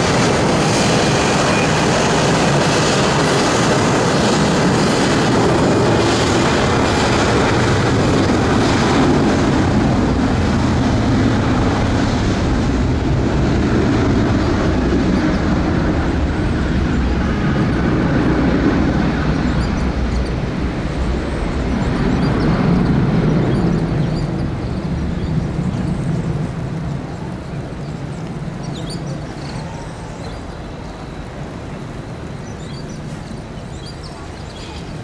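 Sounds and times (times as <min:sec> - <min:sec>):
jet engines rumbling: 0:00.0 - 0:35.0.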